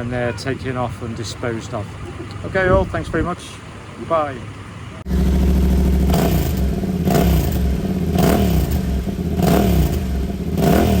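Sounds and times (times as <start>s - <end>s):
motorcycle engine revving: 5.0s - 11.0s.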